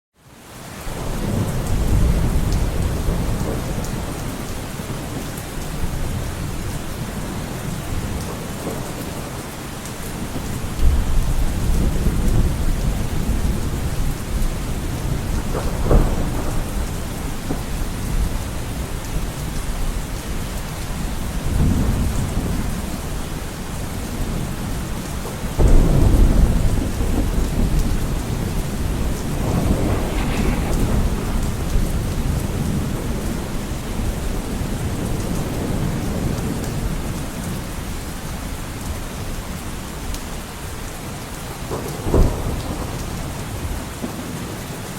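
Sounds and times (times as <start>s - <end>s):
heavy rain: 0.2s - 44.9s
thunder rumbling: 1.0s - 9.4s, 10.0s - 37.6s, 41.6s - 44.5s
sharp thunder crack: 14.7s - 18.4s, 25.6s - 36.3s.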